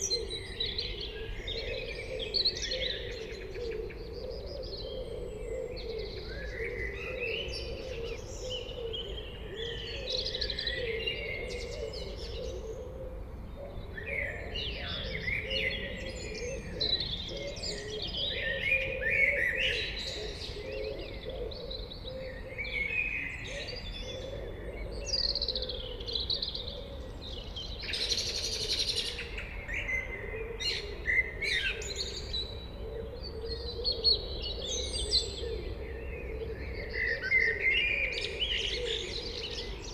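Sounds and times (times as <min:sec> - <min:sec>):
blackbird singing: 0:13.8 - 0:39.9.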